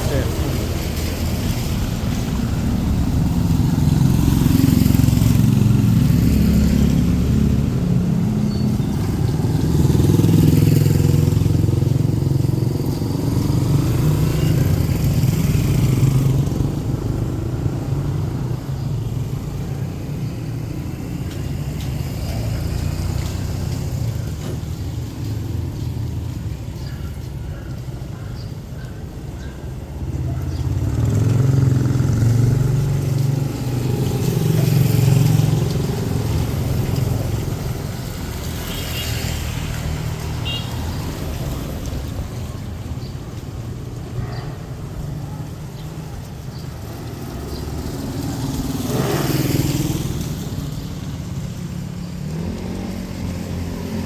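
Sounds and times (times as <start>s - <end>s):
vehicle engines passing: 0.0s - 54.0s.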